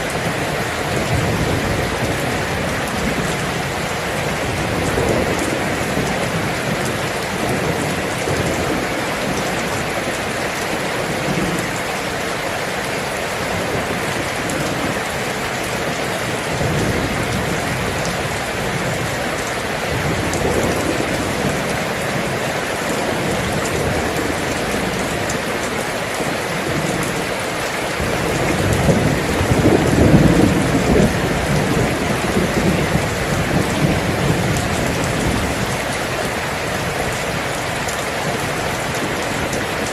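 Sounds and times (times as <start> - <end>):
heavy rain falling: 0.0 - 39.9
low thunder rumble: 28.0 - 35.9.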